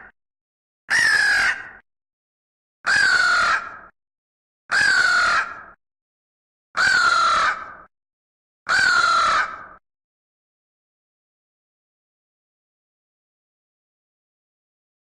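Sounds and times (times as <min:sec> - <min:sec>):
crow cawing: 0:00.9 - 0:01.8, 0:02.9 - 0:03.9, 0:04.7 - 0:05.8, 0:06.8 - 0:07.9, 0:08.7 - 0:09.8.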